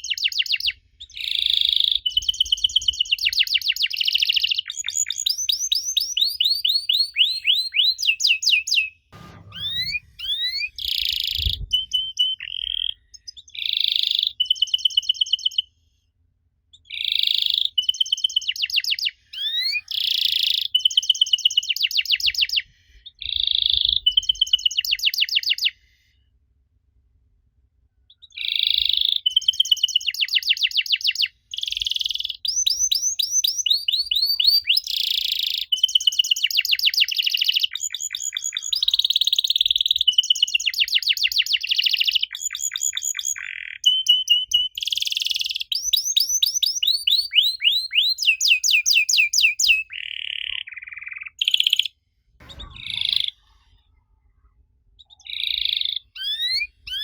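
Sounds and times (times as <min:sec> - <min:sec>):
canary singing trills: 0:00.0 - 0:15.7, 0:16.8 - 0:25.8, 0:28.1 - 0:53.7, 0:55.0 - 0:57.0
low thump: 0:09.2 - 0:12.0, 0:52.4 - 0:53.3.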